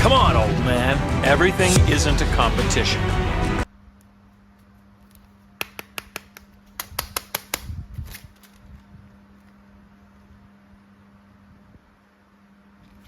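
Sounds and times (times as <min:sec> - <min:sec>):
low electrical hum: 0:03.6 - 0:13.0.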